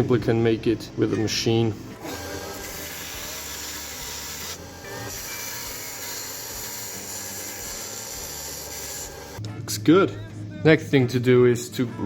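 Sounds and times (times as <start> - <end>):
sanding machine grinding bone: 2.0 - 9.4.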